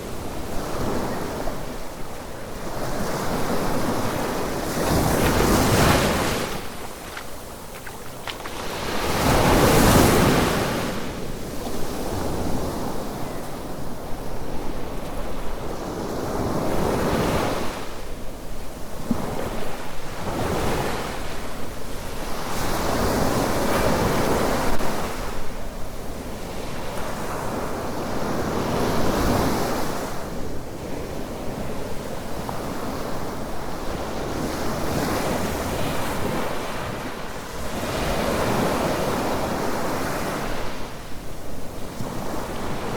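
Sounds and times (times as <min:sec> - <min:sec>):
small waves breaking on beach: 0:00.0 - 0:17.9
wind: 0:00.0 - 0:42.9.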